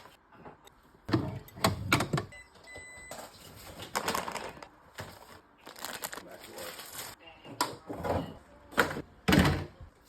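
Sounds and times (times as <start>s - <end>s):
packages rustling: 3.1s - 7.2s.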